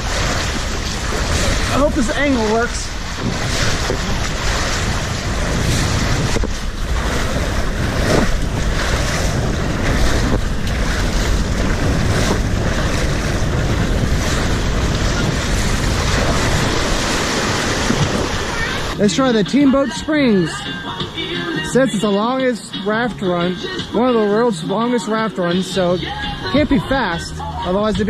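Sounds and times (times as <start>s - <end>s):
wind buffeting microphone: 0.0s - 19.0s
water rushing: 0.0s - 28.0s.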